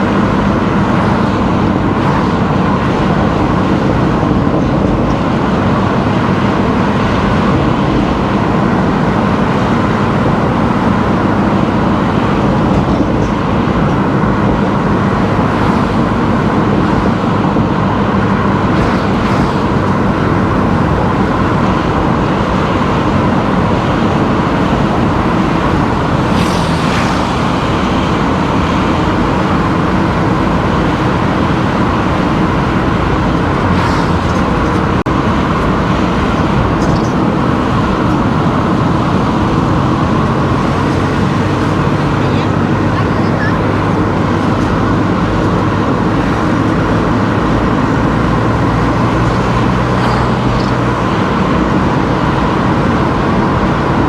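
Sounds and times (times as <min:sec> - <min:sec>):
car engine and tyre noise: 0:00.0 - 0:54.0.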